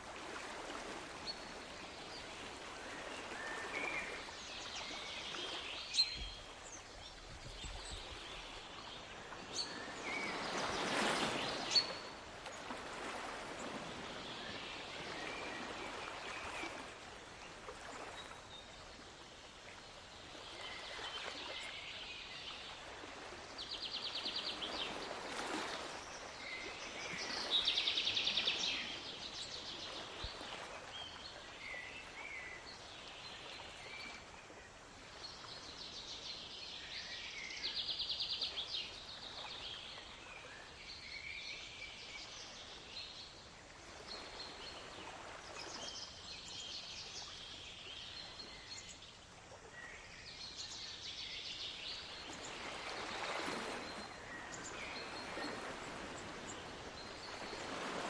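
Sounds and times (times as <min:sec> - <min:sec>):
waves washing: 0:07.9 - 0:18.4, 0:51.7 - 0:58.0.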